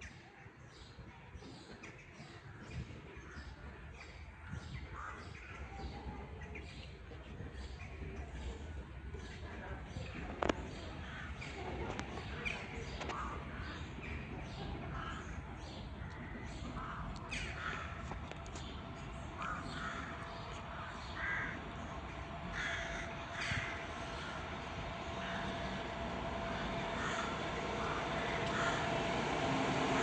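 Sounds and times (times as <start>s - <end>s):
low background rumble: 2.7s - 30.0s
birds calling: 10.0s - 30.0s.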